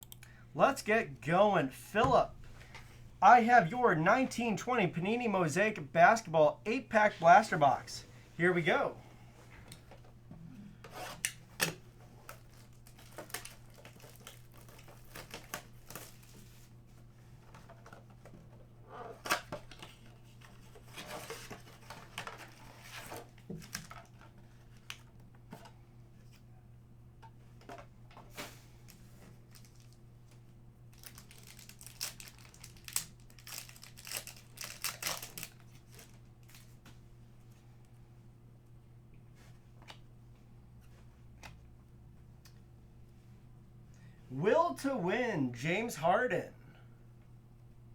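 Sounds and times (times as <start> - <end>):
wrappers crinkling and tearing: 12.3 - 16.7, 28.9 - 36.8.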